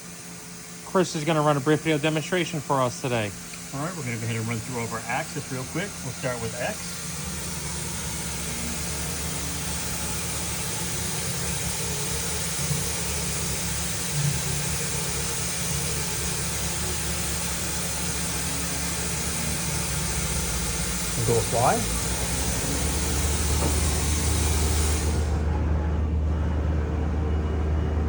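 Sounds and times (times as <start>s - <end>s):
machine hum and hiss: 0.0s - 28.0s.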